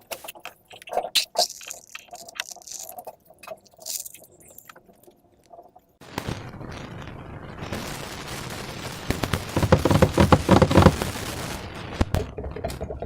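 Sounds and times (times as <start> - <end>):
slime squished by hand: 0.0 - 4.7
slime popping and crackling: 0.0 - 4.8.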